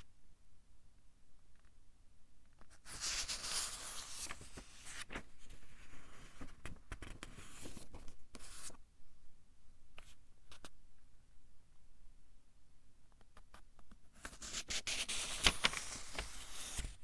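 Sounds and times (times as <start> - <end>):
book pages turning: 2.9 - 5.6, 14.2 - 17.0
light paper ticks: 13.2 - 16.9.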